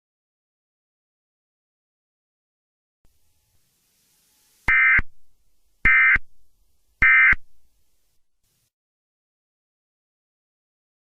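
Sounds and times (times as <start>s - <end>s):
buzzy digital data tones: 3.1s - 5.2s, 5.9s - 6.2s, 7.0s - 7.4s.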